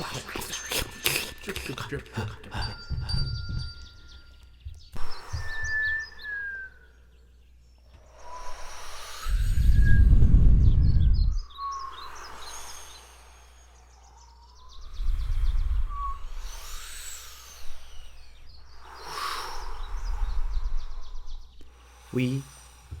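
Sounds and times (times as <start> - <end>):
birds chirping and trilling: 0.0 - 23.0
low rumble: 9.4 - 12.1.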